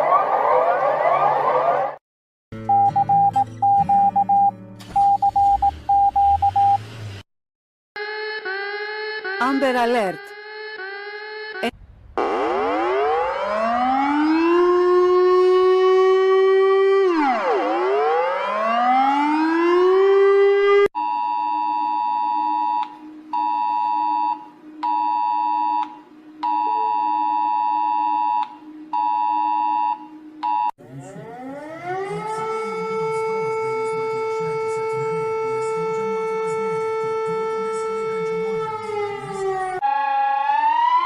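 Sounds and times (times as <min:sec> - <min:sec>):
siren winding up: 0:08.0 - 0:20.9, 0:22.4 - 0:41.0
low hum: 0:11.8 - 0:13.7.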